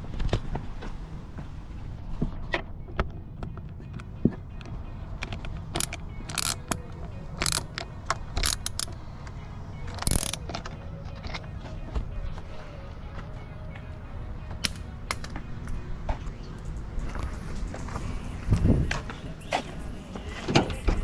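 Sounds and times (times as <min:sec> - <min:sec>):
background music: 0:00.0 - 0:21.0
tools and parts clicking and knocking: 0:02.2 - 0:12.1, 0:14.6 - 0:16.7.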